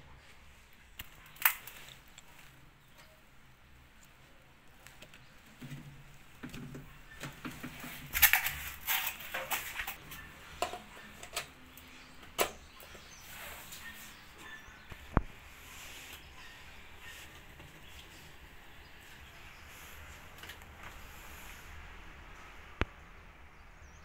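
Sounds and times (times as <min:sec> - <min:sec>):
parts clicking and knocking: 0:04.9 - 0:12.7.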